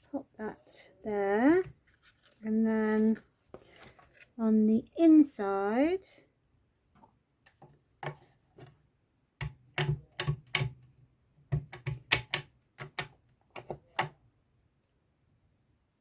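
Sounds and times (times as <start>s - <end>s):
rubber stamp tapping and pressing: 9.4s - 14.2s.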